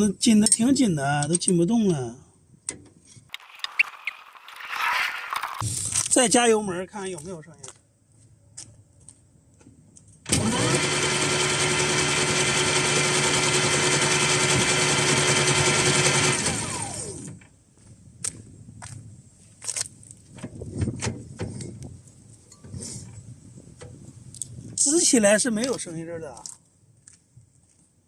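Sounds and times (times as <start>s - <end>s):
electric motor whining: 10.3s - 17.4s.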